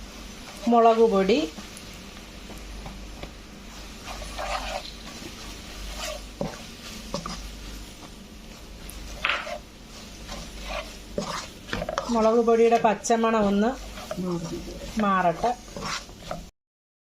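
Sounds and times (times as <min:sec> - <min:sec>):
hot oil sizzling: 0:00.0 - 0:16.5
spatula scraping a pan: 0:03.7 - 0:16.5.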